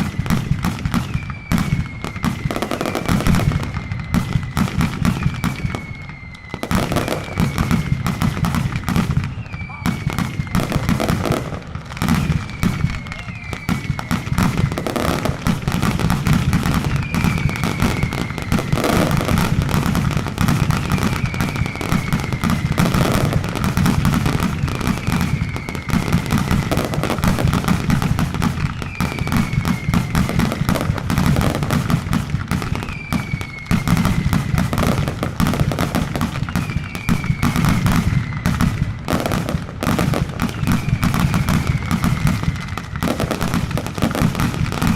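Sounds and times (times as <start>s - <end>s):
firecrackers banging rapidly: 0.0s - 44.9s
short falling whistle: 1.0s - 8.3s, 9.2s - 11.4s, 12.0s - 15.3s, 16.3s - 19.6s, 20.5s - 27.3s, 28.6s - 30.9s, 32.7s - 35.0s, 36.4s - 38.7s, 40.4s - 42.4s.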